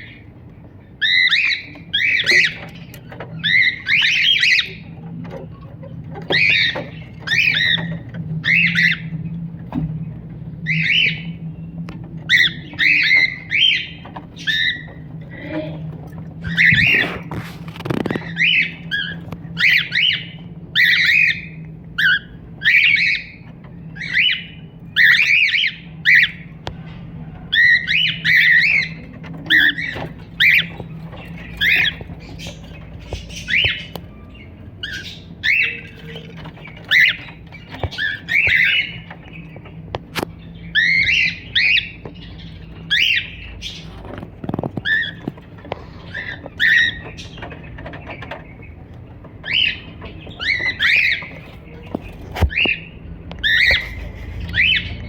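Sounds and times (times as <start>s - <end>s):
cockatiel chirps and squawks: 1.0s - 4.8s, 12.3s - 15.0s, 16.4s - 23.4s, 27.5s - 34.1s, 34.8s - 39.1s, 44.8s - 47.3s, 50.4s - 51.6s, 52.3s - 55.0s.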